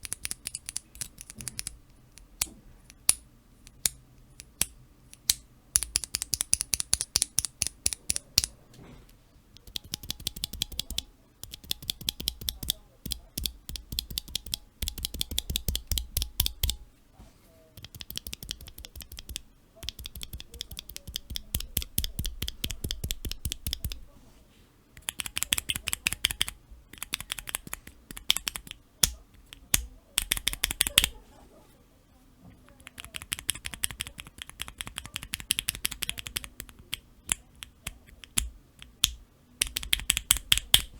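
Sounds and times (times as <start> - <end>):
keyboard keys clacking: 9.6 - 16.8, 17.8 - 24.2, 25.0 - 31.2, 32.6 - 40.9.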